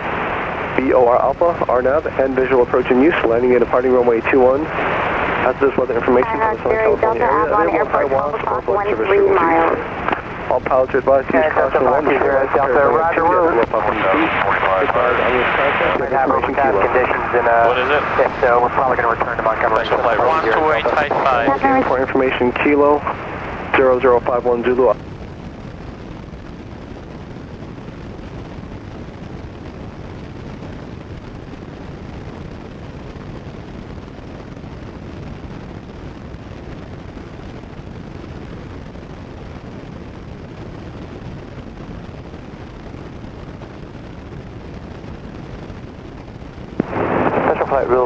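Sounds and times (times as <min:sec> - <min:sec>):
airplane engine droning: 0:00.0 - 0:25.5.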